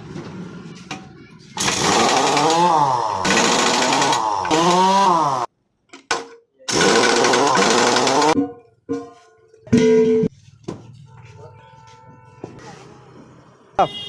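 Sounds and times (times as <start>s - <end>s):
small high-revving motor: 1.6s - 5.5s, 6.7s - 8.4s.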